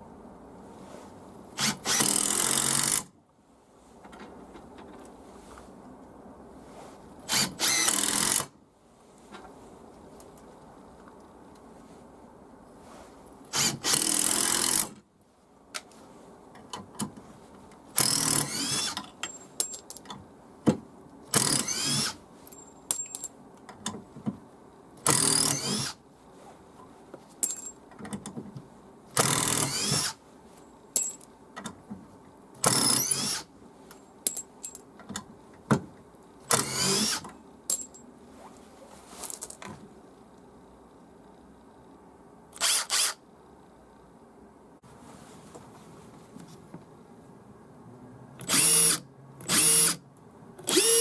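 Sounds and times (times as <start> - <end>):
impact driver motor spinning: 21.4 - 22.2, 25.1 - 26.0, 29.2 - 30.2, 36.5 - 37.2, 50.7 - 51.0.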